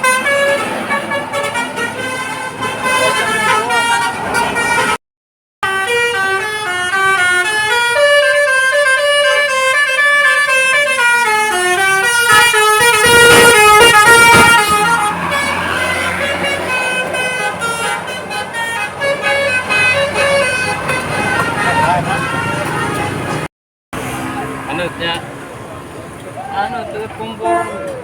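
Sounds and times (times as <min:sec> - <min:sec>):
bus melody horn playing a tune: 0:00.0 - 0:05.0, 0:05.6 - 0:23.5, 0:27.4 - 0:28.0
engine and road noise: 0:00.0 - 0:05.0, 0:05.6 - 0:28.0.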